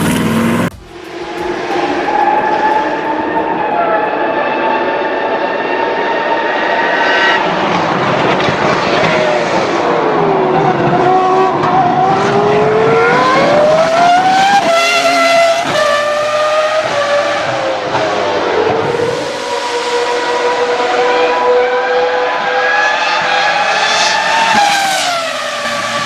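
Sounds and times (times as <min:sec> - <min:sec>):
car engine running: 0:00.0 - 0:04.0.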